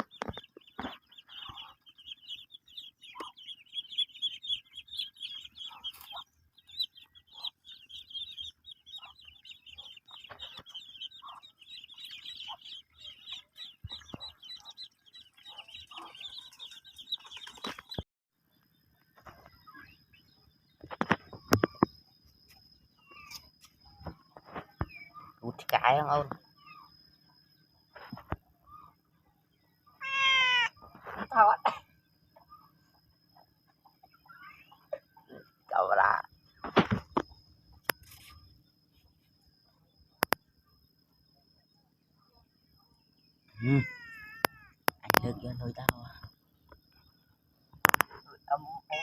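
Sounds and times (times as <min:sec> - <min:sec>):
ducklings peeping: 0:00.0 - 0:18.0.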